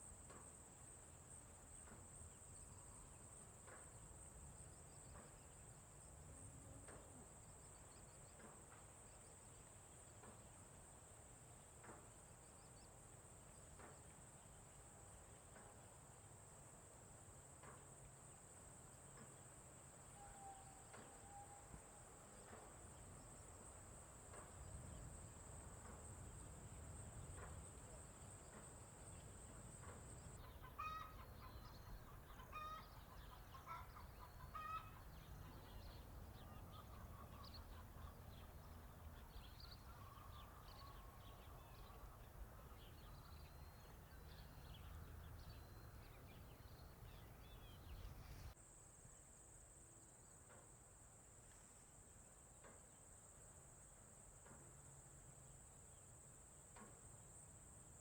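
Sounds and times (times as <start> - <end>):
faint animal calls: 20.1 - 22.2, 30.3 - 48.6
chickens clucking: 30.3 - 48.6.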